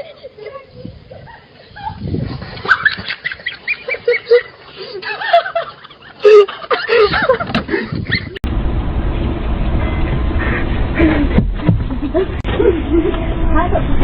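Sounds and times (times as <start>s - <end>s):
steady low rumble: 7.2s - 14.0s.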